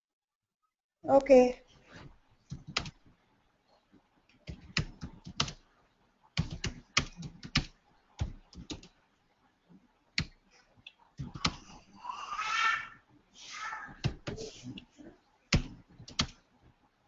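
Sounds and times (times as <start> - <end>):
typing on a keyboard: 2.5 - 3.0, 4.4 - 5.6, 6.4 - 9.0, 11.2 - 11.7, 15.5 - 16.4.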